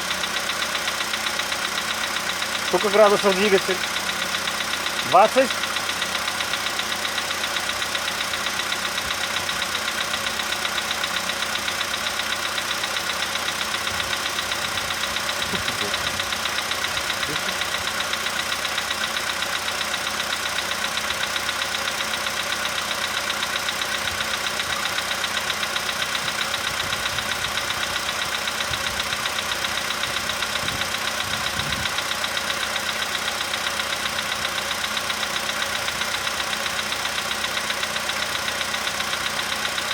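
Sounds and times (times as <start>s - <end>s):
car engine idling: 0.0s - 39.9s
rapid engine knock: 0.0s - 39.9s.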